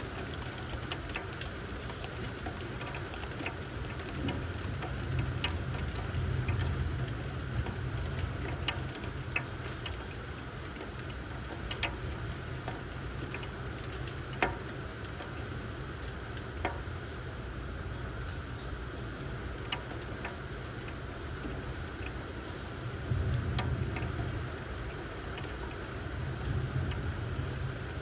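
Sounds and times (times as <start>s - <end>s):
steady rain: 0.0s - 28.0s
low thunder rumble: 22.9s - 28.0s.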